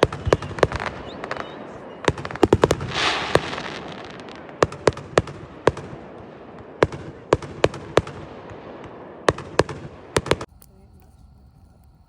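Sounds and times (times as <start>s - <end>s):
campfire crackling and popping: 0.0s - 12.0s
hiss of burning wood: 2.2s - 4.6s.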